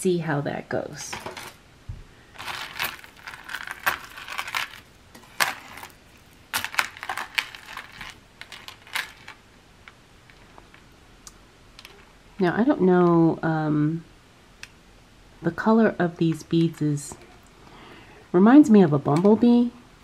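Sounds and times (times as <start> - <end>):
jewelry clinking and rattling: 2.4 - 9.4.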